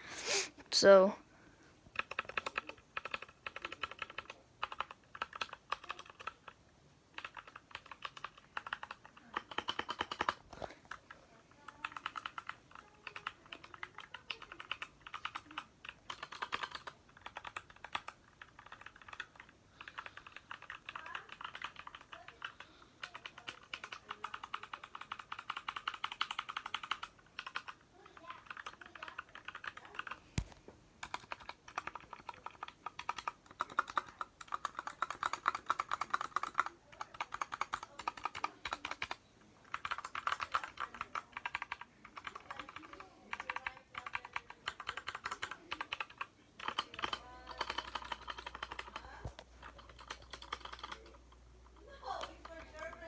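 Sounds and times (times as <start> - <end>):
mechanical keyboard key clacks: 31.0 - 49.0, 49.6 - 51.1.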